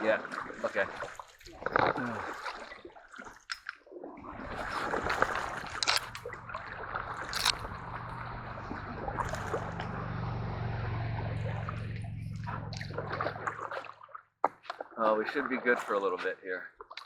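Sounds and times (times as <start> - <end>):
feet wading through water: 0.0 - 17.0
splashes: 0.0 - 17.0
steady low hum: 5.4 - 13.6.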